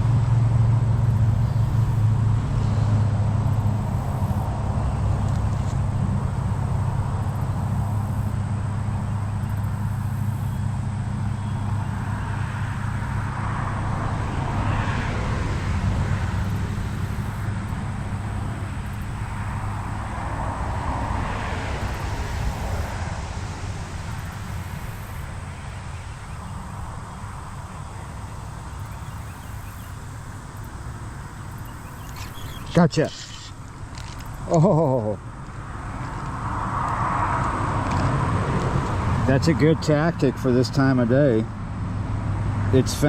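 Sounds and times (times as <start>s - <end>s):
distant traffic hum: 0.0s - 43.0s
vehicles passing: 0.0s - 43.0s.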